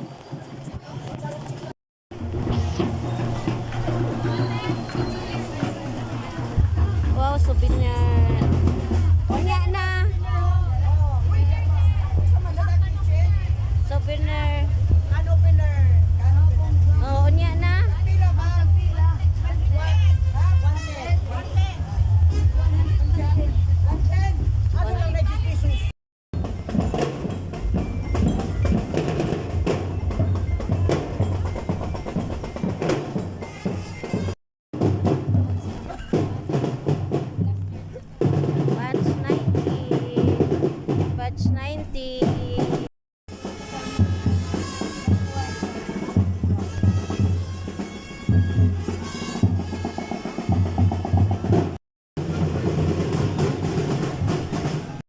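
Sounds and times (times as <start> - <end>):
bass drum: 2.1 - 55.0
snare drum: 2.2 - 10.4, 26.4 - 41.5, 42.2 - 55.0.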